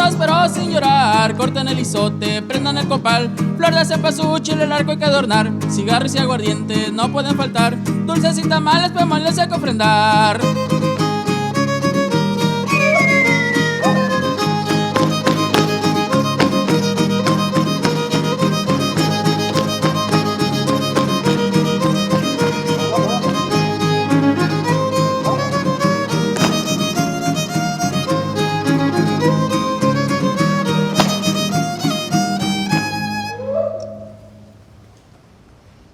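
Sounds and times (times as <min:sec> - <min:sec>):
guitars strumming: 0:00.1 - 0:33.4
violin melody: 0:10.4 - 0:33.4.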